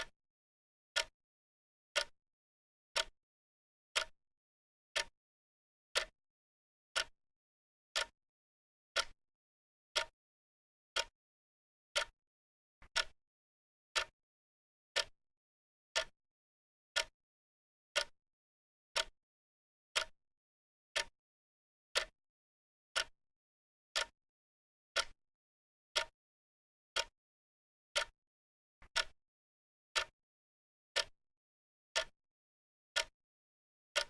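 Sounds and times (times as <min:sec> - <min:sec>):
clock ticking: 0:09.0 - 0:09.2, 0:12.9 - 0:13.2, 0:25.0 - 0:25.2, 0:28.9 - 0:29.2.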